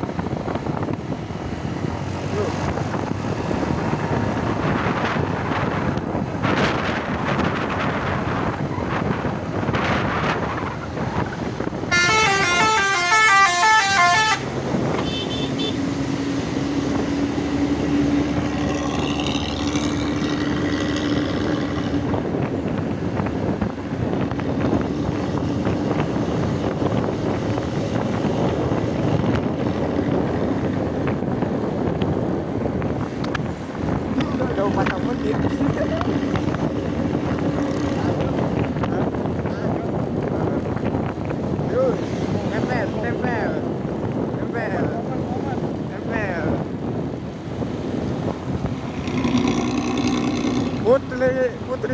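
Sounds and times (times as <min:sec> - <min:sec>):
engine drone: 0:00.0 - 0:32.0, 0:47.3 - 0:51.9
road traffic: 0:00.0 - 0:51.9
bus musical horn: 0:11.8 - 0:15.9.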